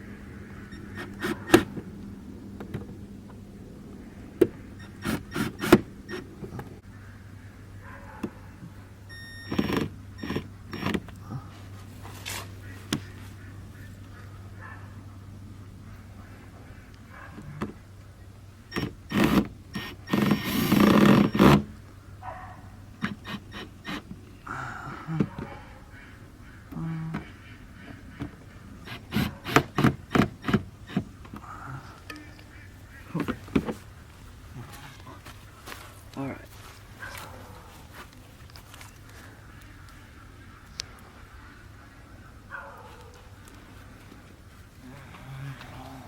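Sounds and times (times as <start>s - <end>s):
steady low hum: 0.0s - 46.0s
cordless drill motor running: 0.6s - 1.8s, 4.8s - 6.4s, 9.1s - 11.1s, 18.7s - 21.8s, 23.0s - 24.1s, 28.8s - 31.1s
sharp clicks: 0.6s - 3.4s, 4.4s - 6.7s, 18.7s - 22.0s, 23.0s - 24.2s, 28.2s - 31.4s
knocks and clicks on a car: 28.2s - 31.4s.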